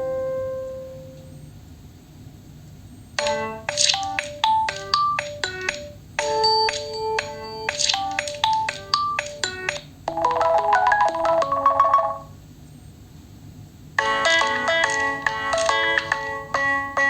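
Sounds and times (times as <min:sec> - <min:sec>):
phone ringtone melody: 0:03.2 - 0:12.4
ringtone repeated notes: 0:03.2 - 0:12.4.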